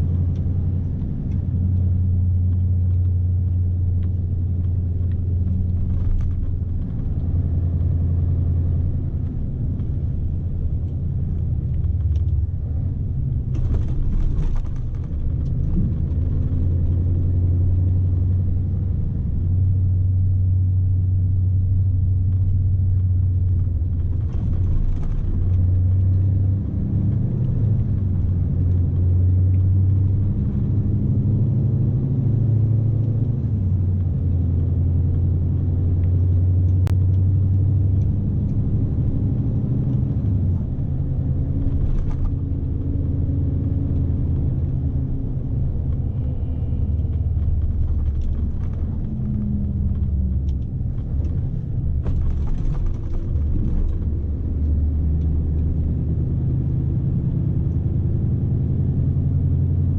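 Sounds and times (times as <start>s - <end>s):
truck diesel engine drone: 23.8s - 59.8s.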